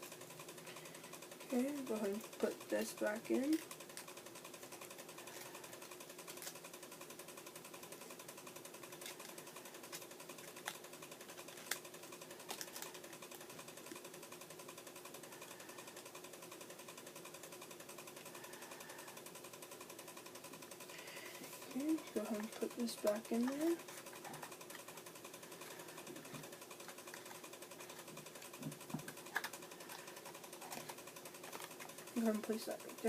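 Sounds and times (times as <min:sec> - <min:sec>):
faint pulsing buzz: 0:12.0 - 0:33.0.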